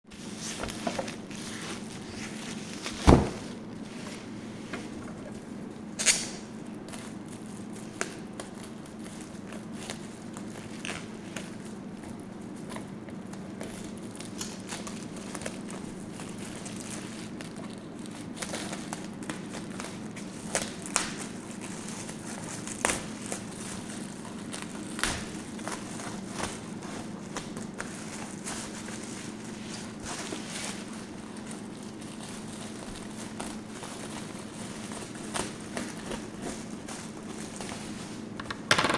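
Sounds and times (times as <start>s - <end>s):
steady low hum: 0.1s - 14.3s
packaging crinkling and rustling: 0.1s - 38.7s.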